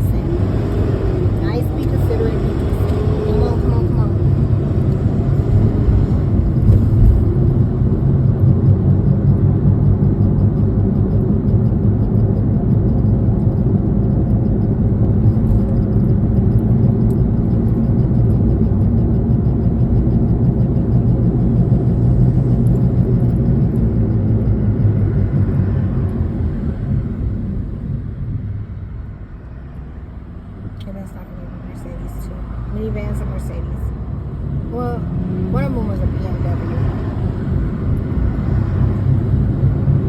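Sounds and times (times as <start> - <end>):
car cabin rumble: 0.0 - 29.2.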